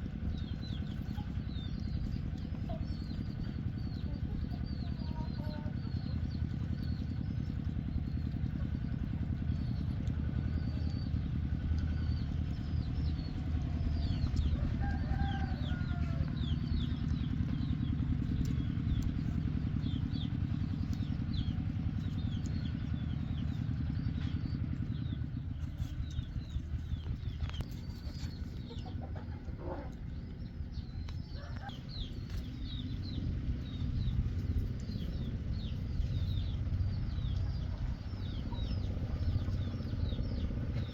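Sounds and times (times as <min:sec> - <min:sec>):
small birds chirping: 0:00.0 - 0:40.9
steady low hum: 0:00.0 - 0:40.9
hen-like clucking calls: 0:26.6 - 0:40.9.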